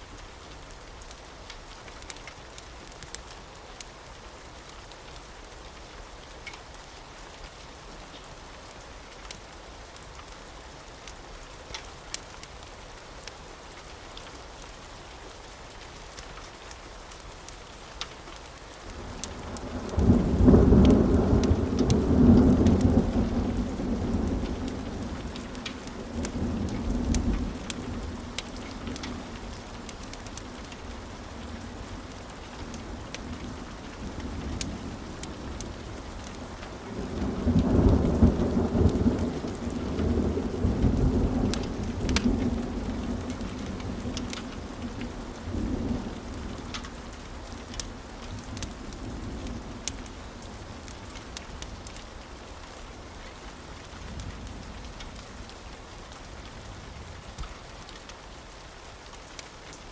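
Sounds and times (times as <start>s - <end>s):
steady rain: 0.0s - 59.9s
deep thunder rumble: 19.1s - 30.5s.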